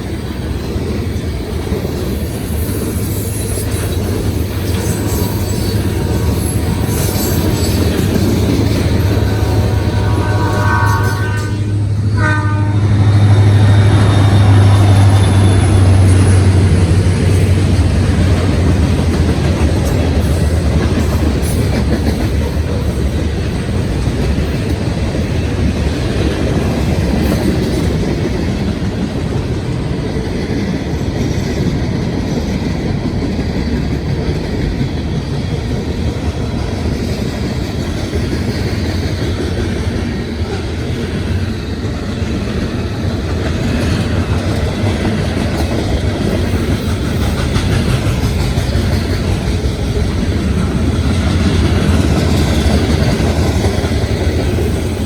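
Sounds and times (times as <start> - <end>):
locomotive engine passing: 0.0 - 32.3, 32.9 - 55.0
freight cars rumbling on rails: 0.0 - 55.0
train horn chord: 9.0 - 16.7.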